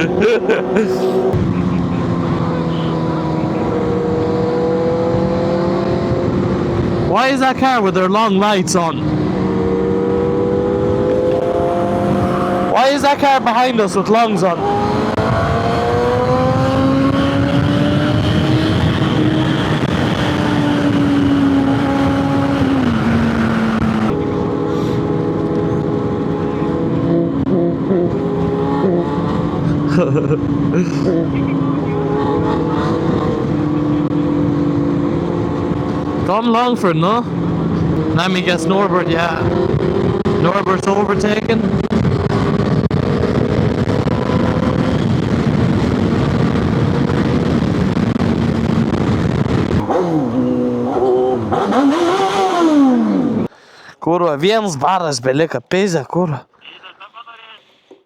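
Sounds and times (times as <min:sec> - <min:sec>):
motorcycle engine cruising: 0:00.0 - 0:07.2, 0:08.7 - 0:53.5
wind rush: 0:14.3 - 0:29.9, 0:37.3 - 0:50.4.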